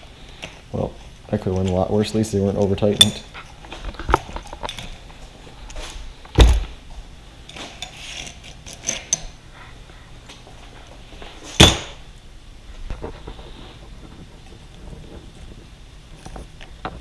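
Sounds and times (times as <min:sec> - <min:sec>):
metal parts clicking and rattling: 0:02.5 - 0:05.2, 0:07.5 - 0:09.3.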